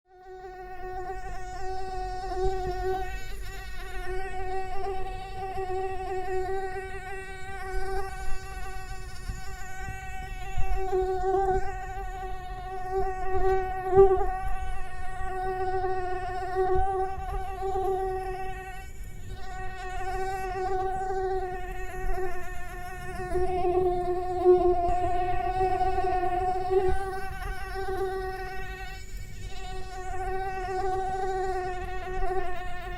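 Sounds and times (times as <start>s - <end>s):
mosquito wings whining: 0.1s - 32.9s.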